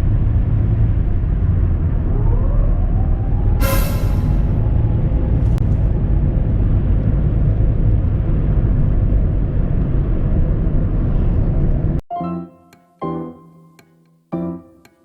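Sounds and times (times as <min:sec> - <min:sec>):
piano music: 0:12.1 - 0:15.0.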